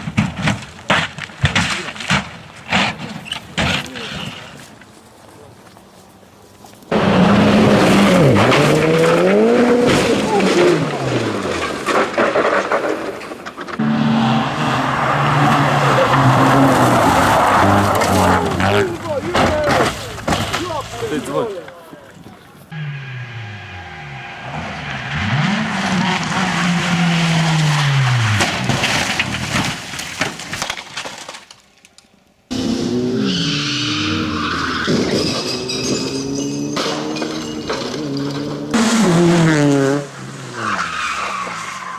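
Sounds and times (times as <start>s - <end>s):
car crash knocks and thuds: 0.0s - 4.6s, 6.9s - 21.4s, 25.2s - 31.5s, 34.8s - 40.1s
rally car engine revving: 6.9s - 13.0s, 13.7s - 21.3s, 22.7s - 29.4s, 32.5s - 41.9s
tyres skidding on loose surface: 6.9s - 31.4s, 32.5s - 41.9s.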